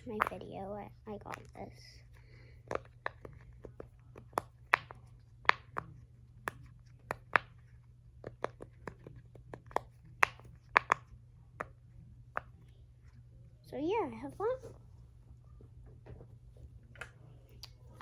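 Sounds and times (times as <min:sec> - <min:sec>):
fidget toy popping and clicking: 0:00.0 - 0:12.7.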